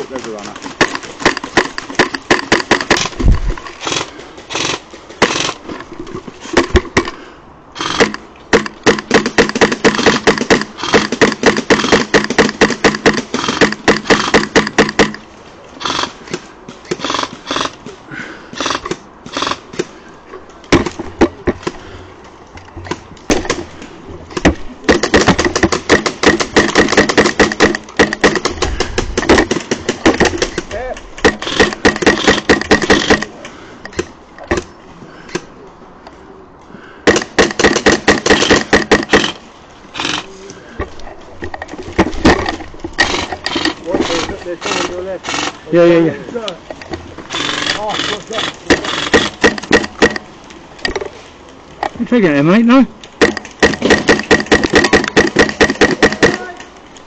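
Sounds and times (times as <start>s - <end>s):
airsoft guns firing: 0.2s - 3.2s, 3.8s - 5.6s, 7.8s - 15.2s, 15.8s - 19.9s, 22.9s - 23.7s, 24.3s - 34.7s, 37.0s - 40.2s, 47.3s - 50.3s, 53.2s - 56.6s.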